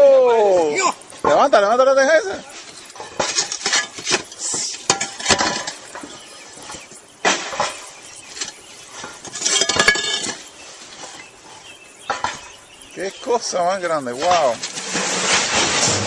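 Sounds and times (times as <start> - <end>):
roof tiles clinking: 0.4 - 16.0.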